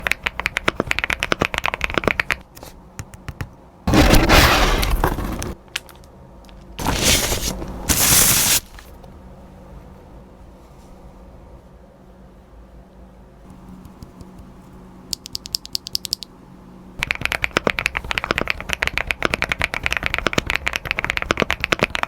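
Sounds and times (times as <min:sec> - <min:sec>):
mechanical keyboard typing: 0:00.0 - 0:02.4, 0:15.1 - 0:16.3, 0:17.0 - 0:22.0.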